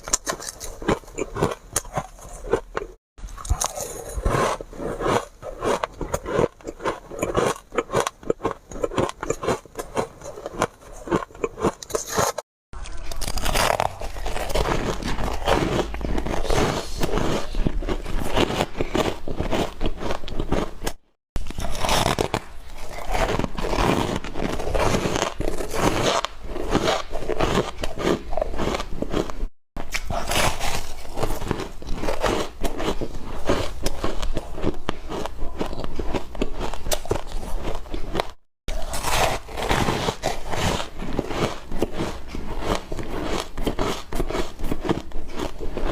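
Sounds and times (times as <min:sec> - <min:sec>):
ice being chewed: 0:00.0 - 0:45.9.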